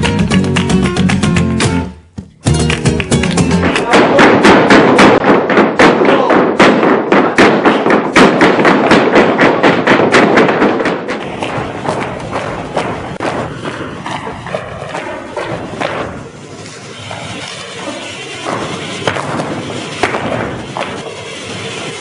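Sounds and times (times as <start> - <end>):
flamenco guitar music: 0.0 - 4.1
rhythmic foot stamping: 0.0 - 16.1.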